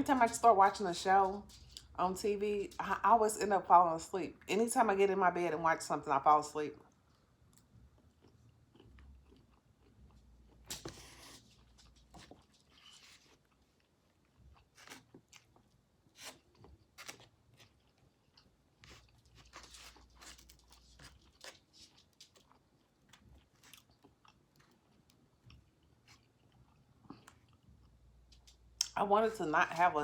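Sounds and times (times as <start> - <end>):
close chewing and crunching: 6.8 - 29.0.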